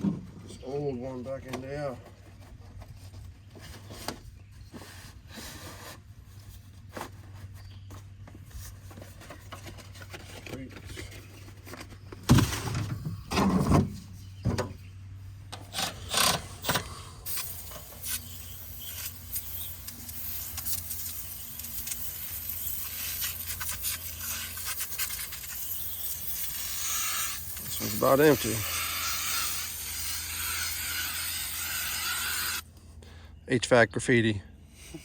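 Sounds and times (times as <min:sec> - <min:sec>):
rubbing and scraping handling: 0:01.2 - 0:14.4
aerosol can spraying: 0:17.3 - 0:32.6.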